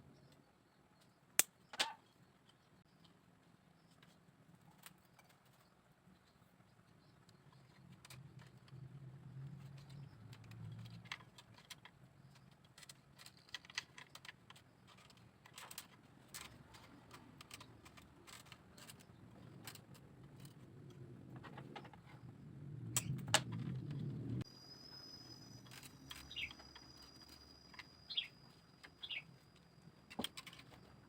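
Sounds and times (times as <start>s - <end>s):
bamboo pieces clicking: 7.2s - 22.0s.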